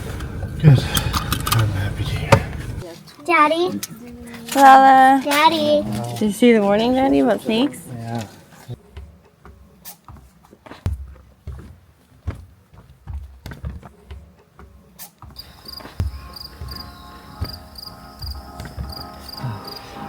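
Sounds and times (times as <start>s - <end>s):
footsteps thudding on steps: 8.9s - 20.0s
crickets chirping: 15.4s - 20.0s.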